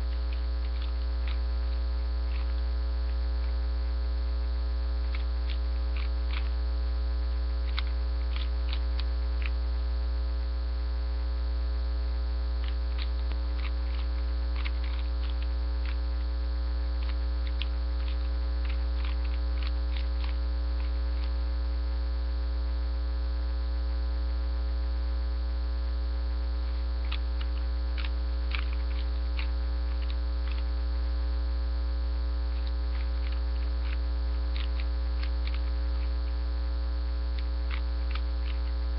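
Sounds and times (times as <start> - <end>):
electrical mains hum: 0.0 - 38.9.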